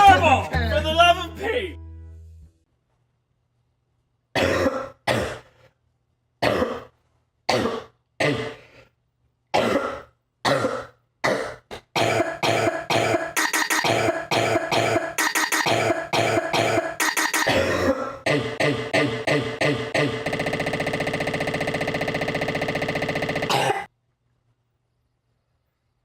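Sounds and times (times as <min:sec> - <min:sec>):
person coughing: 0:04.4 - 0:05.6, 0:06.4 - 0:06.9, 0:07.5 - 0:08.8, 0:09.6 - 0:20.1, 0:23.5 - 0:23.9.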